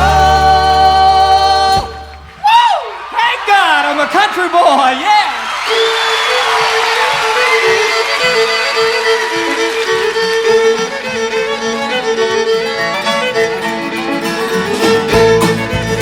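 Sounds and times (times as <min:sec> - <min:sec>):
bass and drums: 0:00.0 - 0:02.4, 0:14.8 - 0:16.0
country music backing track: 0:00.0 - 0:02.4, 0:05.8 - 0:16.0
fiddle playing: 0:03.5 - 0:16.0.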